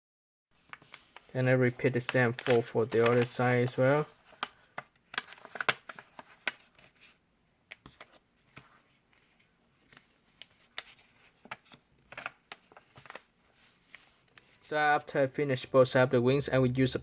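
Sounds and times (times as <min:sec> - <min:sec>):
paper being folded and creased: 0:00.6 - 0:14.7.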